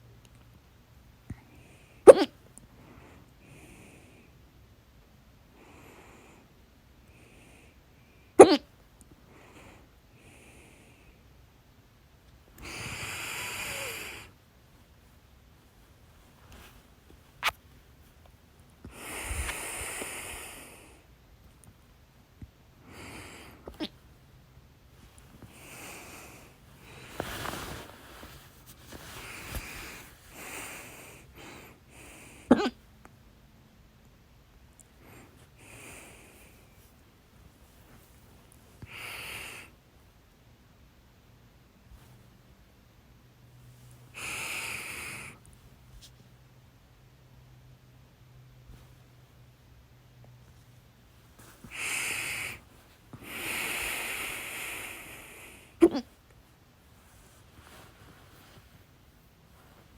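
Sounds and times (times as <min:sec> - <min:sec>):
person hiccuping: 0:02.1 - 0:02.4, 0:08.4 - 0:08.7, 0:32.5 - 0:32.8, 0:55.8 - 0:56.1
faint breaths: 0:02.7 - 0:04.6, 0:05.4 - 0:08.4, 0:09.2 - 0:11.5, 0:12.6 - 0:21.2, 0:22.7 - 0:24.2, 0:24.9 - 0:32.5, 0:34.8 - 0:39.9, 0:43.4 - 0:46.2, 0:47.4 - 0:59.9
long noisy breath out: 0:12.6 - 0:14.4, 0:18.9 - 0:21.1, 0:38.8 - 0:39.8, 0:44.1 - 0:45.4, 0:51.4 - 0:55.8.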